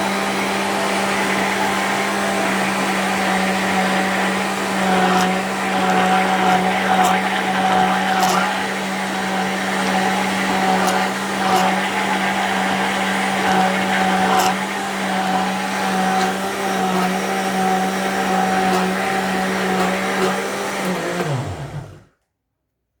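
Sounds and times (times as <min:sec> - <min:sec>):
blender motor running: 0:00.0 - 0:22.1.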